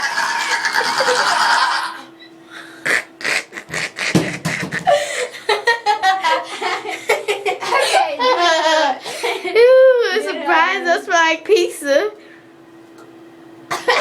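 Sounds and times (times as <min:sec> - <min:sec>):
giggling and laughter: 0:00.0 - 0:02.0, 0:04.6 - 0:10.5.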